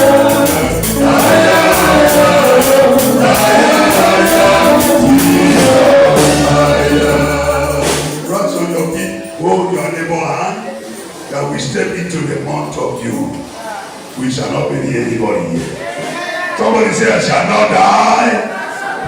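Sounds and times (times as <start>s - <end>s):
steady percussion beat: 0.0s - 10.0s
live band with bass line: 0.0s - 10.1s
congregation singing gospel song: 0.0s - 19.0s.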